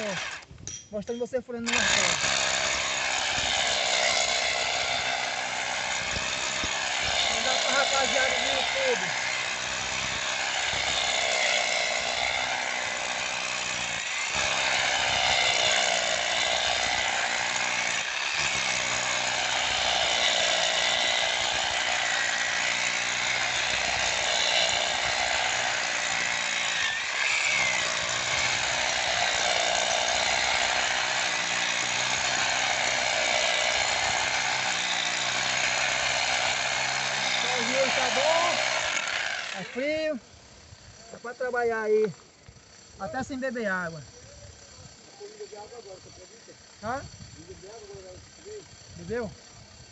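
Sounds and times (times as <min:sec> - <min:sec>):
hammer drill boring into stone: 0:00.0 - 0:40.1.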